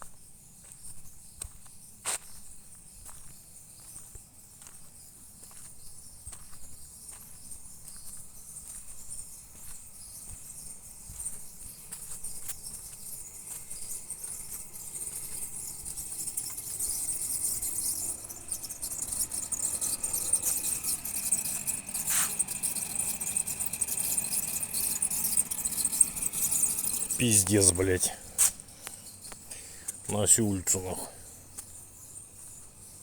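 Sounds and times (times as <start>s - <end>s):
high steady squeal: 13.0s - 33.0s
vehicle squeaking: 13.8s - 32.6s.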